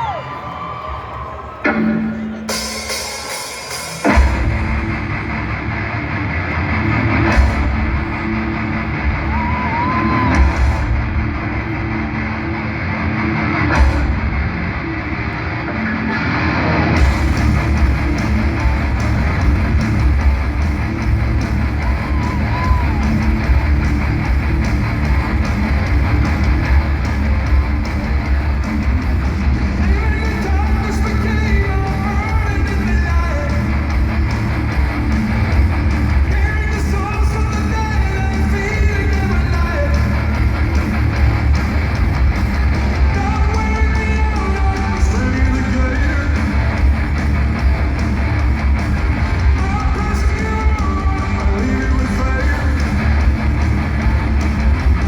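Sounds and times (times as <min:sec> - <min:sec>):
heavy metal band playing: 0:01.6 - 0:55.0
person singing: 0:49.4 - 0:53.2.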